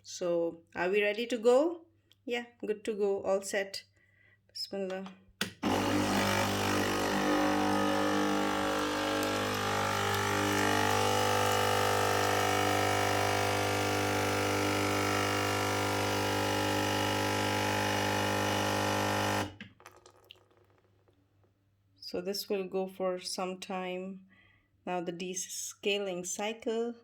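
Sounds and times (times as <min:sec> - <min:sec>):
coffee machine pump buzzing: 0:05.5 - 0:19.6.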